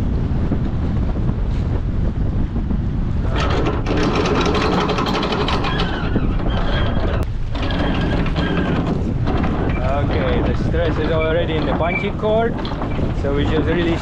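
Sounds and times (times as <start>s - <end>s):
anchor windlass running: 0.0s - 14.0s
wind buffeting the microphone: 0.0s - 14.0s
chain rattling: 3.2s - 14.0s.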